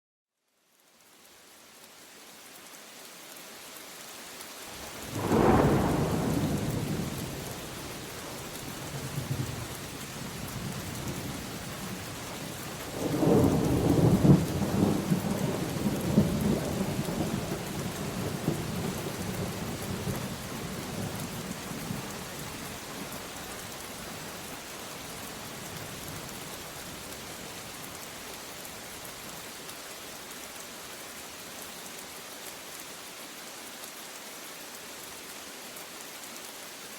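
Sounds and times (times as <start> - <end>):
steady rain: 0.4 - 36.9
thunder rumbling: 4.9 - 8.1.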